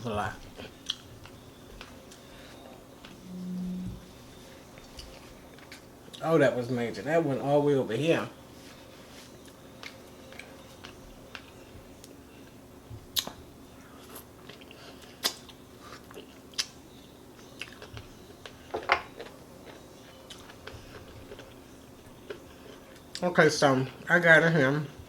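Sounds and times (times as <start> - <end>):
chewing and mouth smacking: 14.1 - 16.8, 17.4 - 23.2.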